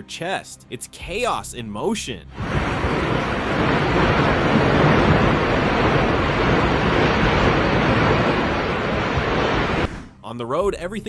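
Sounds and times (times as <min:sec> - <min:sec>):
strong wind roaring on microphone: 0:02.4 - 0:10.1.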